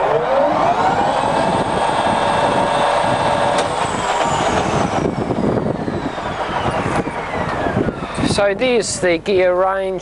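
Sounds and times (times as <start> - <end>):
mechanical clatter: 0.0 - 8.8
lathe gear whine: 0.0 - 9.2.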